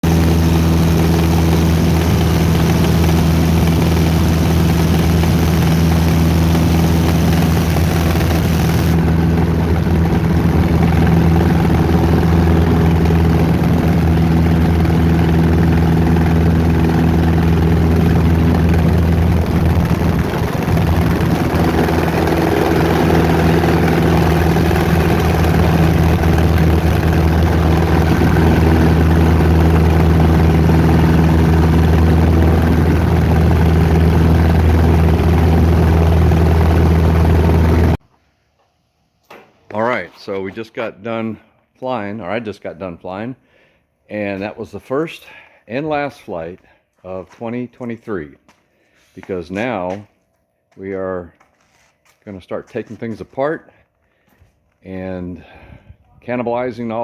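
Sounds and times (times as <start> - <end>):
light airplane engine and propeller: 0.0 - 38.0.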